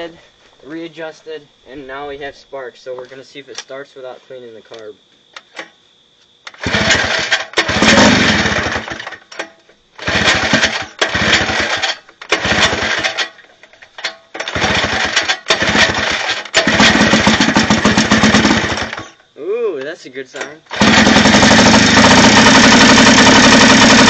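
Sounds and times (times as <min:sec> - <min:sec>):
outboard motor firing: 0:06.6 - 0:09.0, 0:10.0 - 0:13.2, 0:14.4 - 0:19.2, 0:20.7 - 0:24.0.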